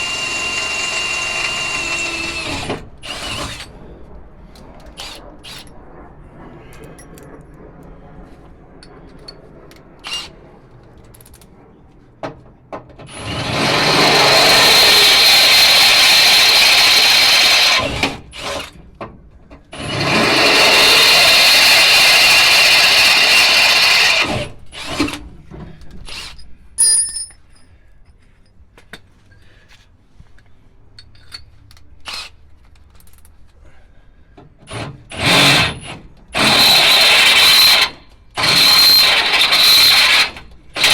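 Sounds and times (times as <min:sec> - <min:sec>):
power drill boring into steel: 0:00.0 - 0:03.7, 0:10.0 - 0:10.3, 0:13.1 - 0:18.8, 0:19.8 - 0:25.2, 0:34.7 - 0:40.9.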